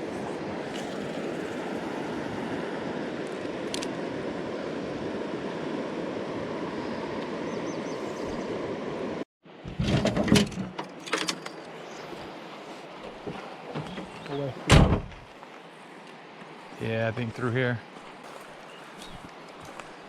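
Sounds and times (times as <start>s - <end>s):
river current rushing: 0.0s - 9.2s.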